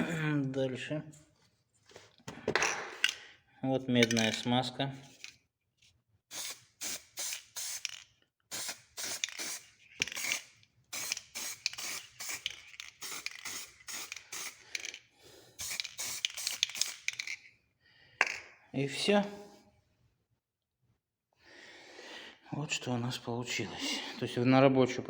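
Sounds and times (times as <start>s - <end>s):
aerosol spray hissing spurts: 6.3s - 7.9s, 8.5s - 14.6s, 15.6s - 17.0s.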